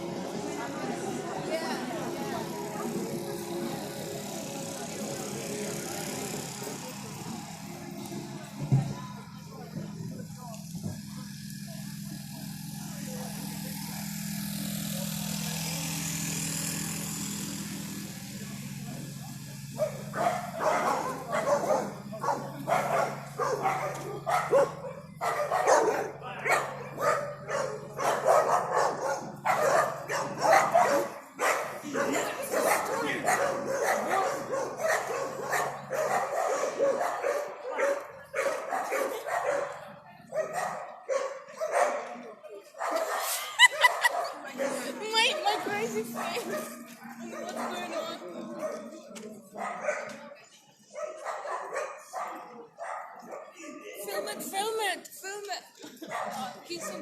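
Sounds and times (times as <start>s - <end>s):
dog barking: 19.8s - 54.0s, 56.0s - 57.0s.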